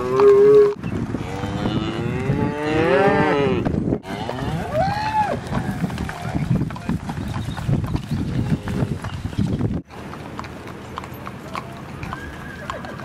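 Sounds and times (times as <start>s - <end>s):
cattle mooing: 0.0s - 4.8s.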